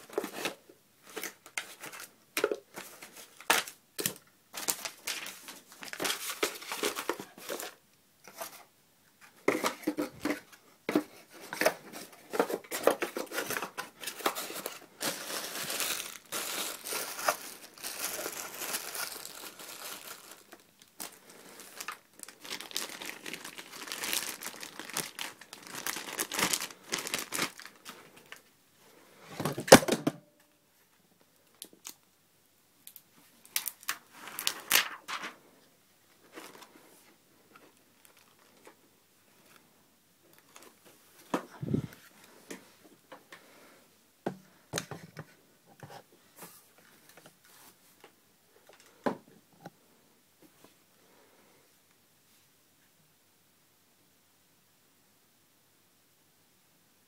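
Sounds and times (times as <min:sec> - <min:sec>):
packaging crinkling and tearing: 0:02.8 - 0:07.8, 0:11.6 - 0:28.5, 0:32.9 - 0:35.4, 0:37.9 - 0:38.7.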